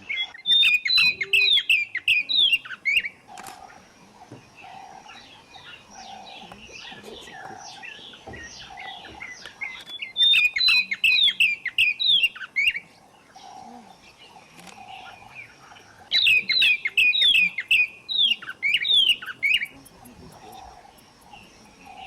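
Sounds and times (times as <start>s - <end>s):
bird singing falling notes: 0.0s - 3.6s, 5.2s - 12.8s.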